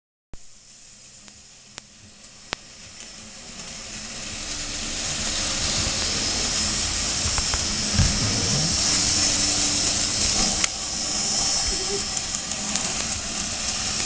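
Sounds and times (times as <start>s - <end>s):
steam-like hissing: 0.4s - 14.0s
low thump: 7.3s - 8.9s.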